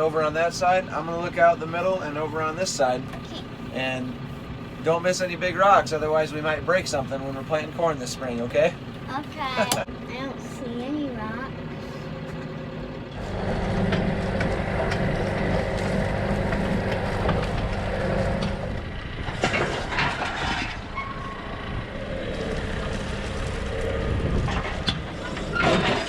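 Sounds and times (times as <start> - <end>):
tractor diesel engine running: 0.0 - 26.0
sharp knocks and rattles: 13.8 - 26.0.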